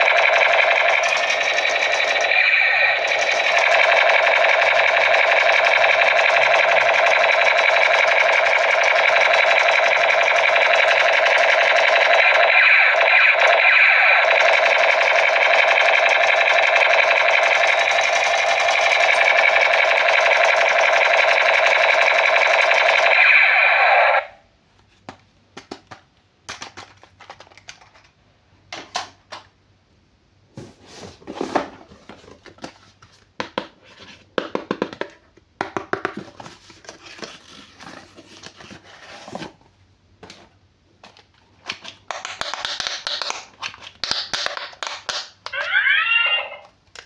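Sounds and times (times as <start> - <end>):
loud electronic sound: 12.0 - 14.6, 22.8 - 24.3
plastic toys and packaging rustling: 24.7 - 29.5, 30.6 - 35.3, 36.0 - 47.0.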